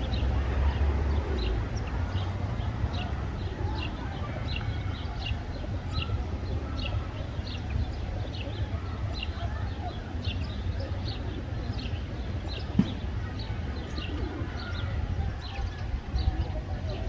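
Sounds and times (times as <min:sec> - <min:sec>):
sparrows chirping: 0:00.0 - 0:17.0.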